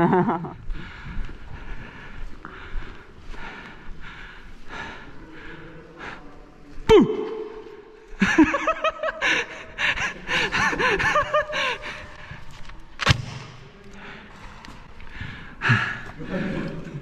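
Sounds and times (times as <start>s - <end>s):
sharp crack: 13.0s - 13.8s.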